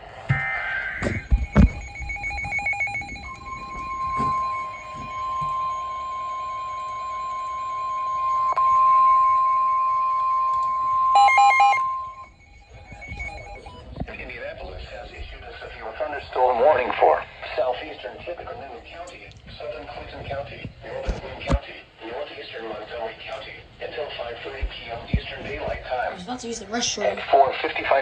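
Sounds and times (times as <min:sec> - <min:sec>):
steady warning alarm tone: 0:00.0 - 0:19.0
chirping data tones: 0:00.3 - 0:17.4.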